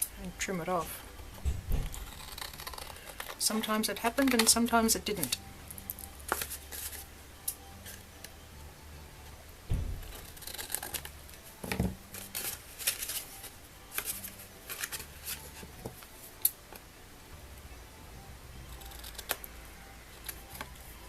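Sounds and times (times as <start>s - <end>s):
dull thumps of card handled: 1.4s - 2.0s, 9.7s - 10.3s.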